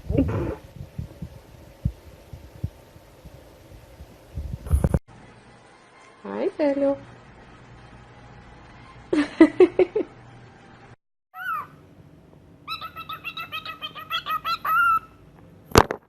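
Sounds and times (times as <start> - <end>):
parrot calls: 11.4 - 11.9, 12.6 - 15.2.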